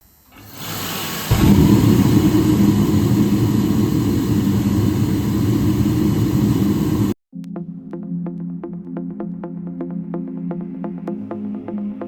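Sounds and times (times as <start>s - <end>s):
car engine exhaust rumble: 1.3s - 7.2s.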